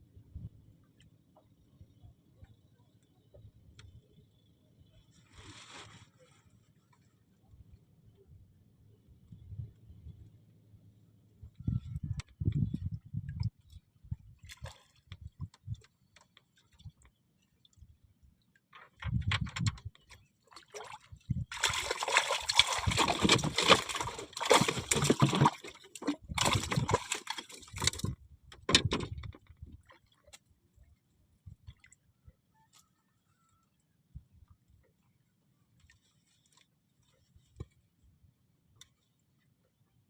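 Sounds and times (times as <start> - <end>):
water splashing and sloshing: 11.8 - 32.8.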